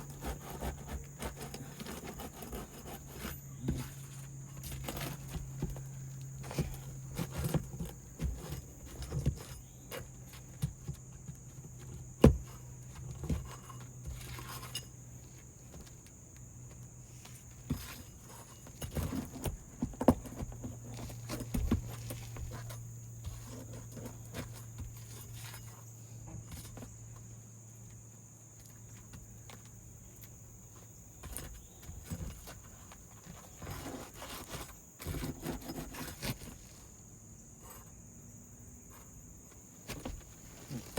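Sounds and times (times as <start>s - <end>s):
tools tapping on roof shingles: 0.0s - 14.7s, 16.7s - 25.5s, 39.8s - 40.9s.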